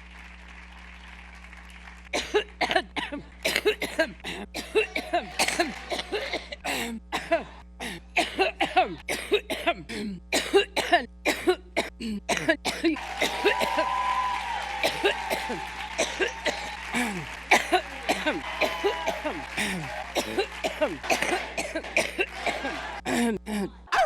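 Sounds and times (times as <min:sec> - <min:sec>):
woman coughing hoarsely: 0:02.2 - 0:13.8, 0:14.8 - 0:24.0.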